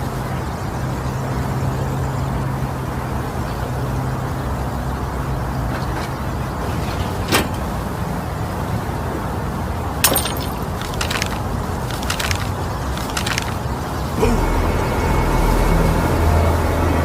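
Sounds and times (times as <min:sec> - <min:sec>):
light rattles: 0:10.0 - 0:13.7.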